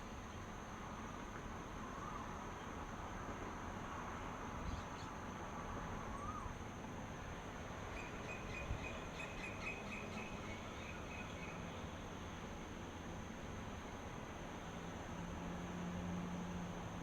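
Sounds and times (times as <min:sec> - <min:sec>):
high insect drone: 0:00.0 - 0:17.0
low rumbling hiss: 0:00.0 - 0:17.0
rising-falling whistles: 0:06.1 - 0:06.5.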